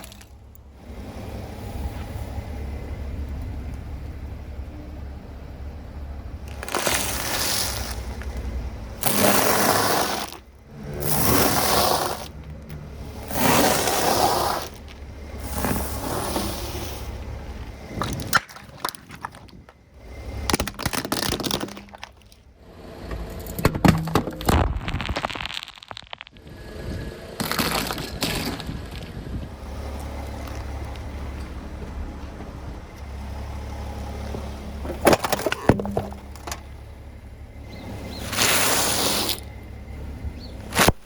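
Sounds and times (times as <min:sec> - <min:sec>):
objects crunching under car tyres: 0:00.0 - 0:02.3, 0:06.3 - 0:41.0
sharp cracks and snaps: 0:24.4 - 0:26.4.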